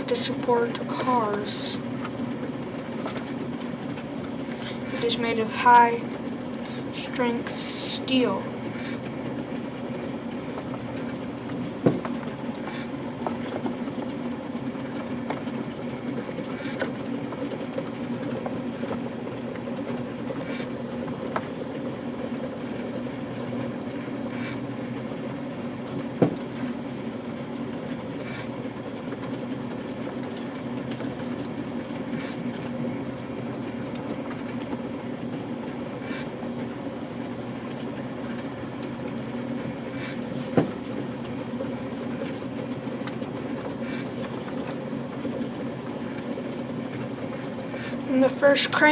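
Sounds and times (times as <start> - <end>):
plastic and metal knocks: 11.8 - 12.2, 26.2 - 26.4.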